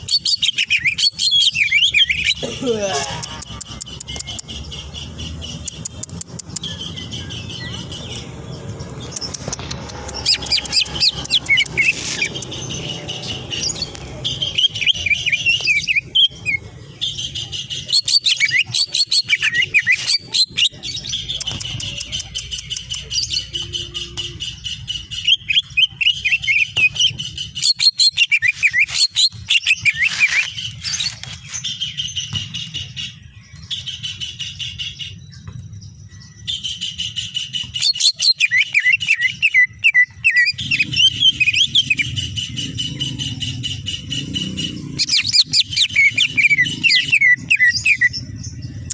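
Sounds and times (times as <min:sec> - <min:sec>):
bird singing chirps and trills: 0:00.0 - 0:48.9.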